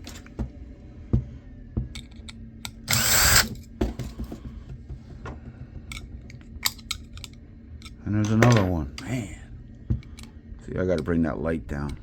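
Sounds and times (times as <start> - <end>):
electric screwdriver spinning: 2.9 - 3.5.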